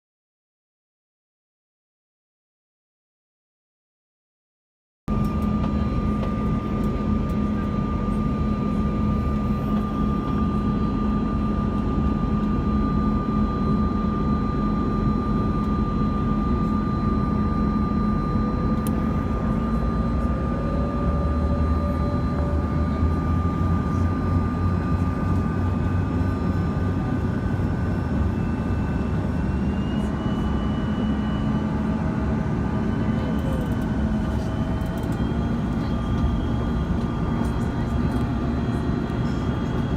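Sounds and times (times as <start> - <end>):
jet engine roar with high whine: 5.1 - 39.9.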